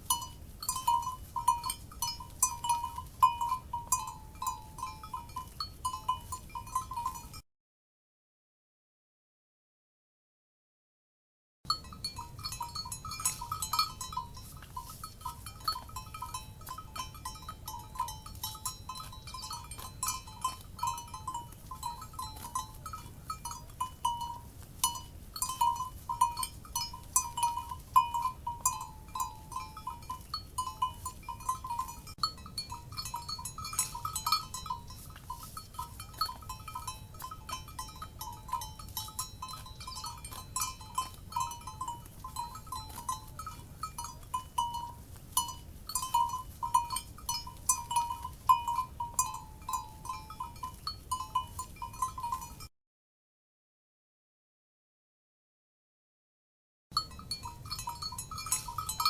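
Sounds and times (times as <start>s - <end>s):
cowbells clanking: 0.0s - 7.4s, 11.7s - 52.7s, 56.9s - 59.0s
low steady rumble: 11.7s - 52.5s.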